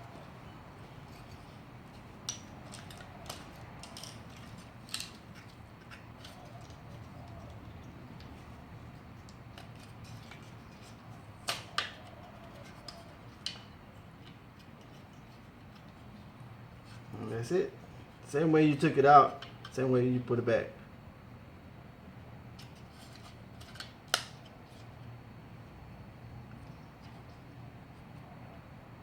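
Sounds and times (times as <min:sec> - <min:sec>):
steady low hum: 0:00.0 - 0:29.0
plastic parts clicking and tapping: 0:01.2 - 0:08.4.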